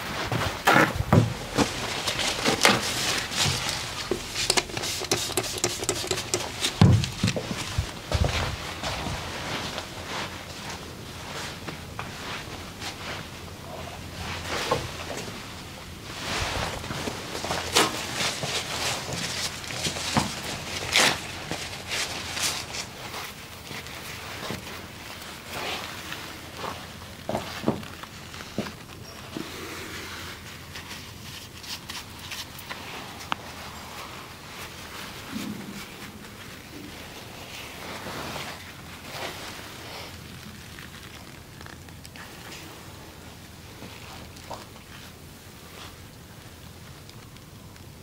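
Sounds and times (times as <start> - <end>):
soft rubbing and swishing: 0.0 - 46.9
hands tapping and rubbing body: 1.1 - 9.0.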